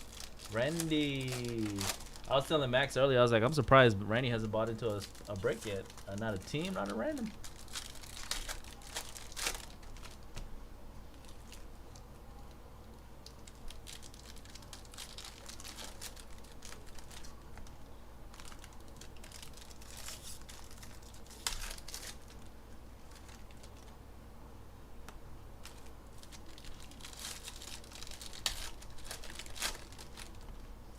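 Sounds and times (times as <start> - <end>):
cards handled: 0.0 - 2.6
wrappers torn and crinkled: 0.0 - 2.9, 4.2 - 10.4, 13.2 - 23.9, 25.6 - 30.6.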